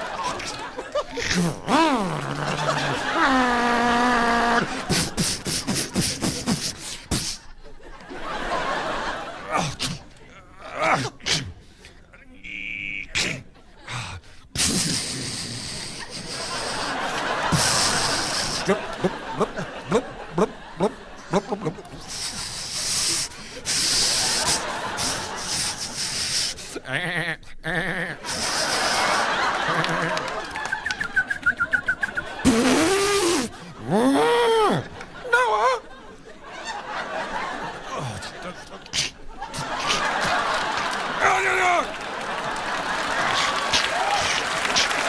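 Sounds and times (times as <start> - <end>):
breathy hiss: 0.0 - 7.6, 14.2 - 20.2, 21.2 - 26.8, 28.2 - 30.4
vocal bleat-like warble: 1.3 - 4.8
mouth pops and clicks: 30.6 - 33.6.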